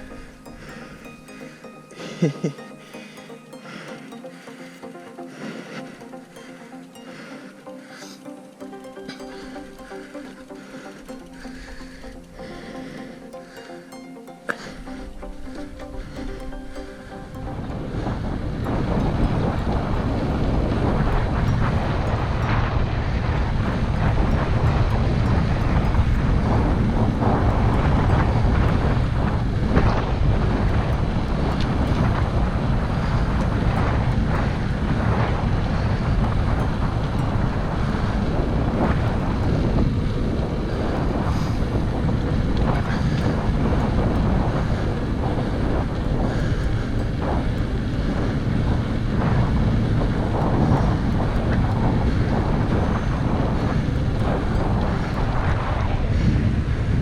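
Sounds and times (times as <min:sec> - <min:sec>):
wind buffeting microphone: 0:16.0 - 0:57.0.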